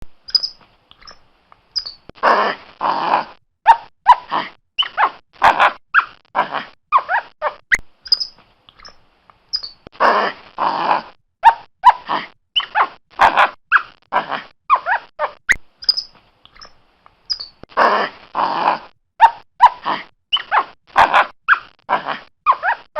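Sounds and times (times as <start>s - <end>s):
monkey squeaks and calls: 0.2s - 2.1s, 4.8s - 5.2s, 6.9s - 9.9s, 12.6s - 13.0s, 13.7s - 14.0s, 14.7s - 17.6s, 19.2s - 20.8s, 21.5s - 21.8s, 22.5s - 22.9s.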